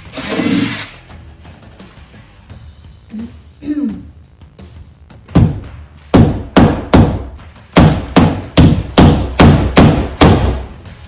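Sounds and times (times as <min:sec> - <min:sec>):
hammer striking wall anchor: 0:07.8 - 0:10.6.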